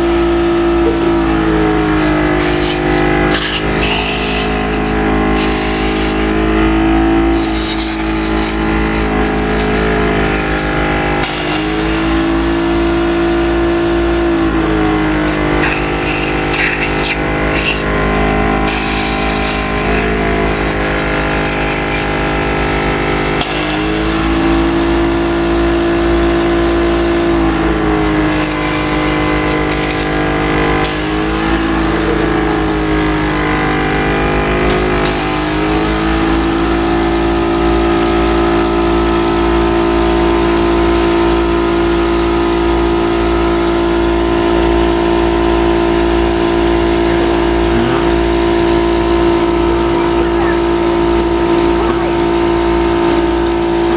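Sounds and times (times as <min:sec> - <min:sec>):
therapy machine buzzing: 0:00.0 - 0:53.9.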